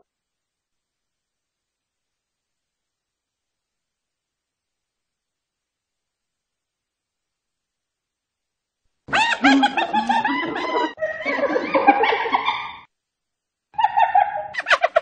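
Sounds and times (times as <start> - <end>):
hyena giggling: 9.1 - 12.9, 13.8 - 15.0.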